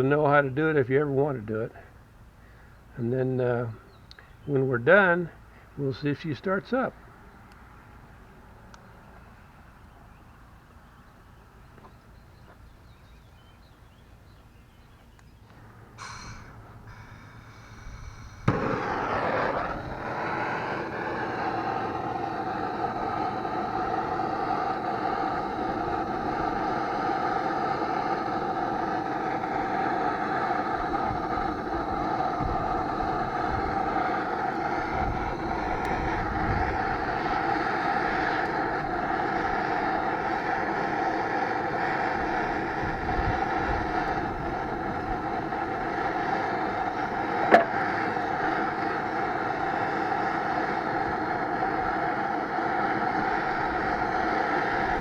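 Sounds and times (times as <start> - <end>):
machine humming: 15.5 - 55.0.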